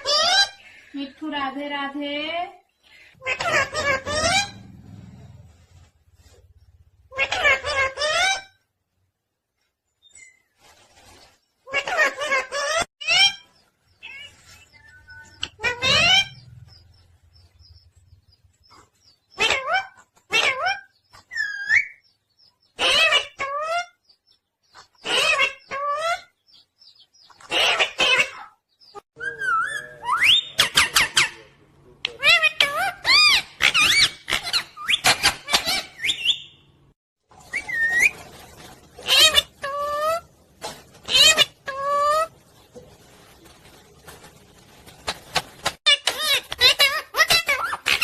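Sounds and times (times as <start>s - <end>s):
parrot calling: 7.1s - 8.6s, 11.7s - 17.0s, 22.8s - 24.0s, 25.0s - 26.4s, 27.4s - 28.6s, 32.1s - 36.7s, 39.0s - 40.3s, 41.0s - 42.3s, 45.8s - 48.0s
parrot whistled calls: 37.4s - 38.2s.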